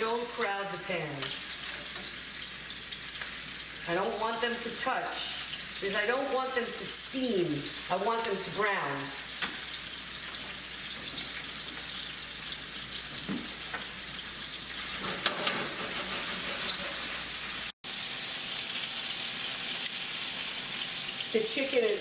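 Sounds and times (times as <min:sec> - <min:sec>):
chicken frying in oil: 0:00.0 - 0:22.0.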